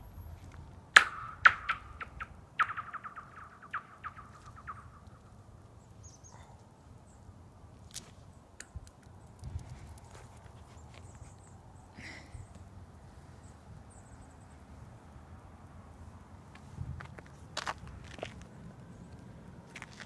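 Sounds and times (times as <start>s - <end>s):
rock striking thin ice: 1.0s - 4.8s.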